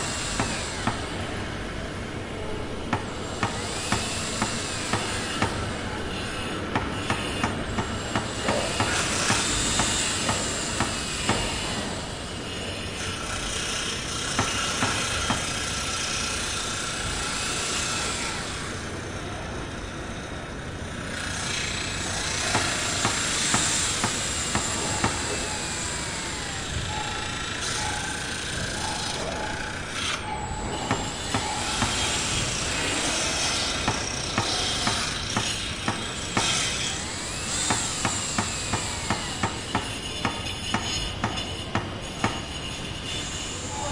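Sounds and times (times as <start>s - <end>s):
machinery running: 0.0s - 43.9s
tools knocking and clanking: 30.2s - 32.4s.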